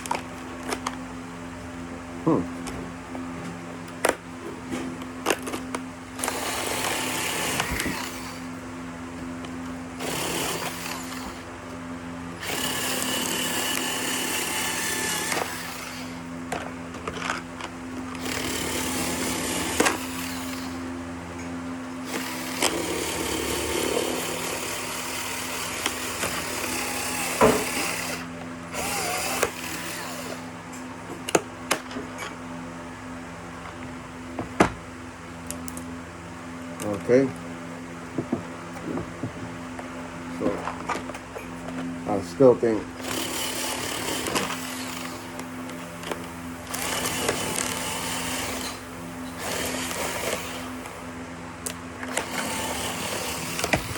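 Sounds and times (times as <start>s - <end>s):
power cutter cutting packaging: 0.0s - 1.0s, 5.0s - 8.6s, 9.3s - 21.1s, 21.8s - 31.8s, 42.4s - 53.9s.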